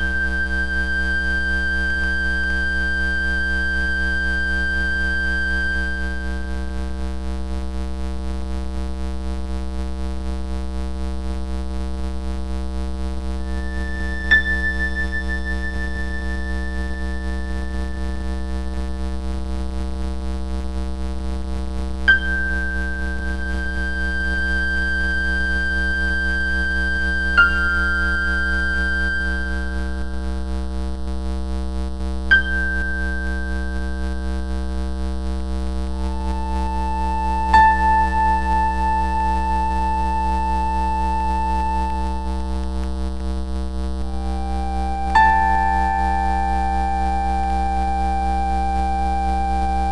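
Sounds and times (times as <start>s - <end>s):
electronic drone of sine tones: 0.0s - 7.9s, 13.3s - 19.6s, 22.0s - 31.4s, 32.1s - 49.9s.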